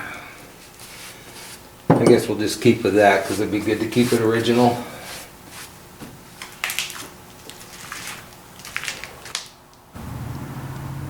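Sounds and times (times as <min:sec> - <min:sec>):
steady low hum: 0:00.0 - 0:06.5.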